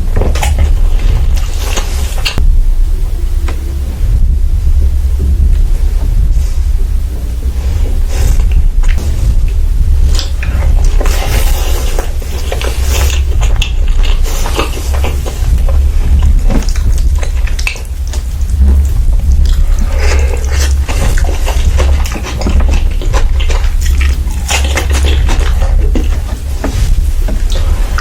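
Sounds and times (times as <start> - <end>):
person chewing and smacking: 0.0 - 2.4, 8.2 - 28.0.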